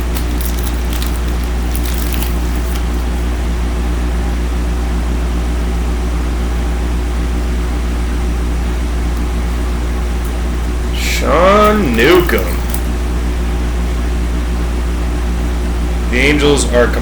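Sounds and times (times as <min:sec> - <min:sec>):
cards rustling: 0:00.0 - 0:03.3, 0:11.0 - 0:13.0.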